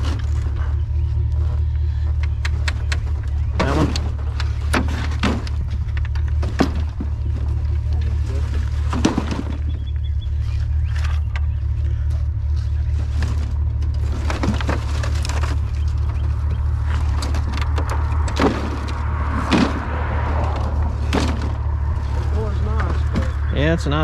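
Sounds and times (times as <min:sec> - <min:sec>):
light knocks and rattles: 0:00.0 - 0:10.0, 0:10.6 - 0:23.5
pickup truck engine and road drone: 0:00.0 - 0:24.0.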